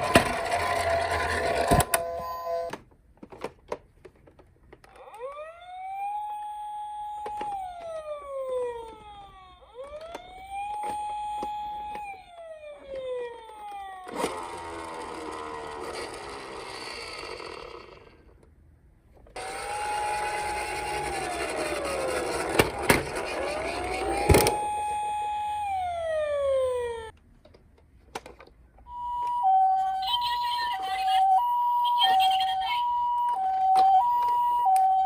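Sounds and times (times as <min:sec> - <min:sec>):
toy cars rolling with rattle: 0:00.0 - 0:01.9, 0:14.1 - 0:18.4, 0:19.4 - 0:24.3
toy police siren wailing: 0:04.9 - 0:17.1, 0:19.4 - 0:27.2, 0:28.9 - 0:35.0.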